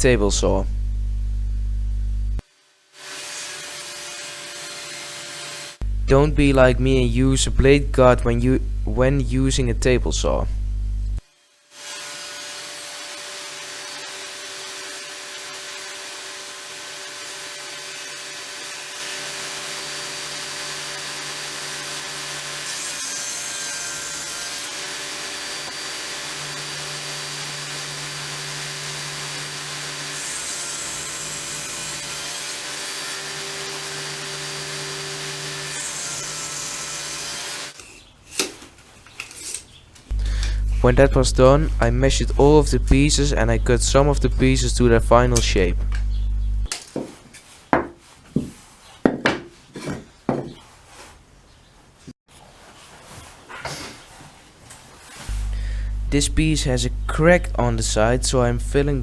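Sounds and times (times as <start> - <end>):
table saw cutting wood: 3.0 - 37.8, 40.1 - 46.7, 55.3 - 59.0.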